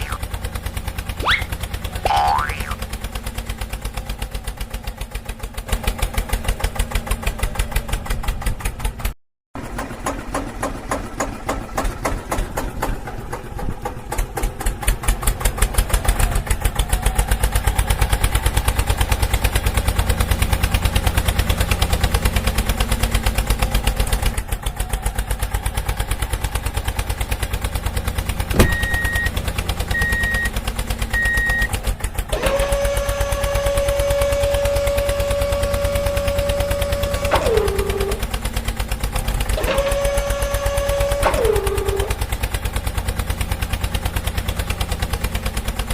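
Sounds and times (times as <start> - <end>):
short high beeps: 0.0 - 0.2, 1.2 - 1.5, 28.6 - 29.3, 30.0 - 30.5, 31.2 - 31.7
small engine chugging: 0.0 - 45.9.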